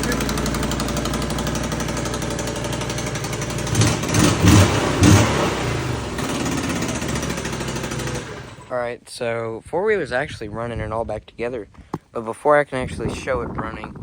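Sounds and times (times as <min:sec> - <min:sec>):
engine idling: 0:00.0 - 0:08.7
engine throttle blips: 0:00.0 - 0:08.7.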